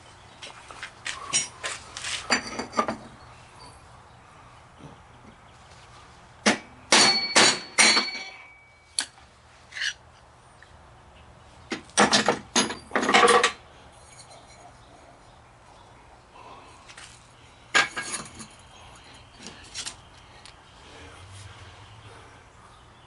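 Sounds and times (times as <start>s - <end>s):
metal parts knocking and clinking: 12.0s - 14.6s, 17.7s - 18.6s.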